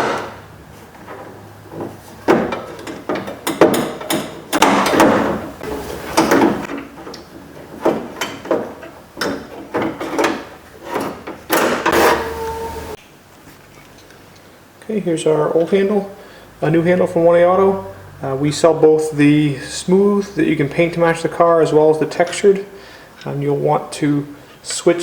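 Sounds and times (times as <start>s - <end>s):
car door handle and tools clunking: 1.8s - 12.9s
short steady tone: 12.0s - 13.0s.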